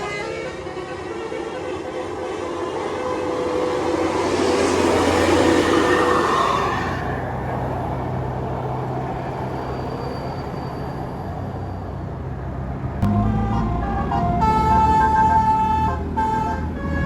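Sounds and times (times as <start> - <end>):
bus engine humming: 0.0 - 17.0
large vehicle rushing past: 3.5 - 17.0.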